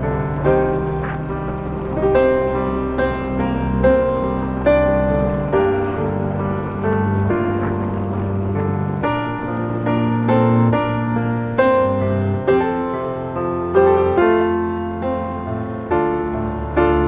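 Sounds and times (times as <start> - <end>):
piano melody: 0.0 - 17.0.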